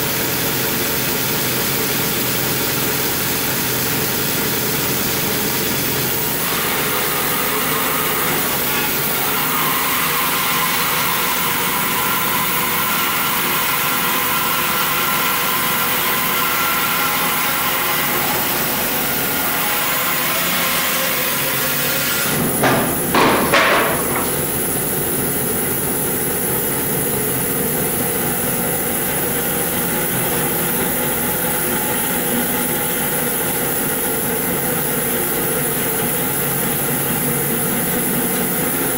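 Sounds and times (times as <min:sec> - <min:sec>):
band saw cutting into log: 0:05.4 - 0:25.0
loud knocks: 0:22.3 - 0:24.7.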